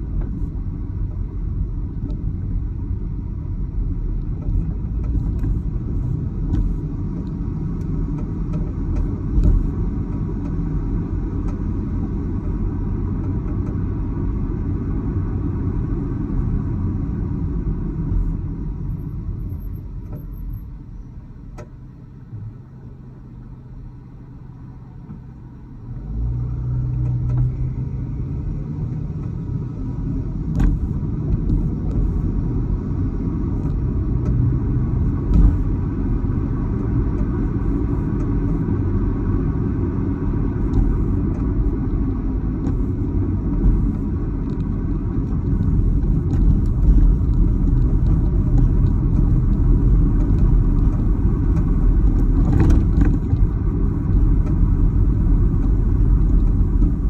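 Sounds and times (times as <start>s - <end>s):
car driving rumble: 0.0s - 57.0s.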